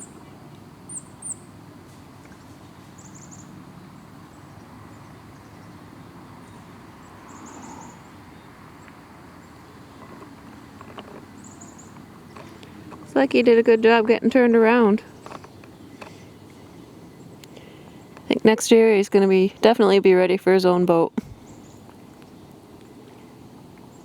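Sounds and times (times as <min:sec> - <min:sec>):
low steady background noise: 0:00.0 - 0:24.0
small bird chirping and trilling: 0:03.0 - 0:03.5, 0:11.4 - 0:12.6.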